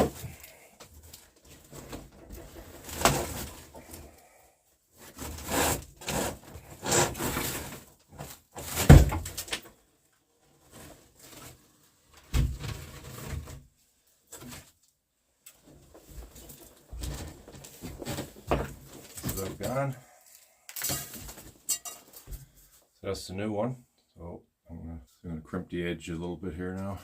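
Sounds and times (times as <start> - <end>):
metal pipe scraping and rattling: 16.4 - 22.6.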